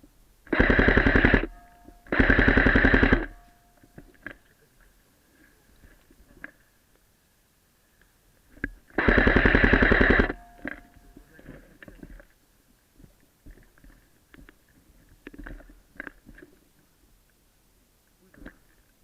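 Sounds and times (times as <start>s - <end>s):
airsoft gun full-auto burst: 0.5s - 3.4s, 9.0s - 10.5s
faint clicks and knocks: 8.0s - 8.9s, 10.3s - 17.4s.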